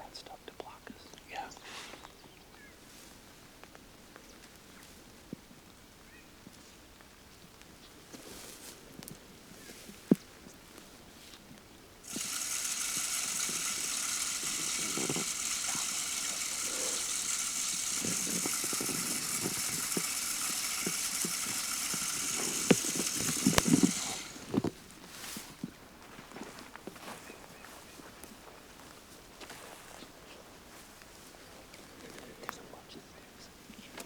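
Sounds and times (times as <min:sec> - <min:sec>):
corn rattling and ticking: 0:12.0 - 0:24.7
feeder motor whirring: 0:12.0 - 0:24.7.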